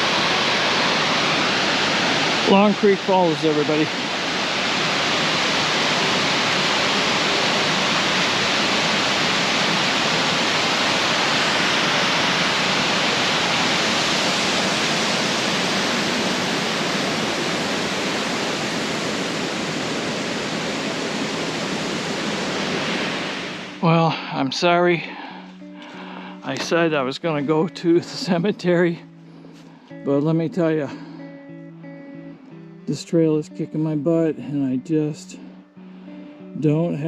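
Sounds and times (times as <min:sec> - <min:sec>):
waterfall rushing: 0:00.0 - 0:28.7.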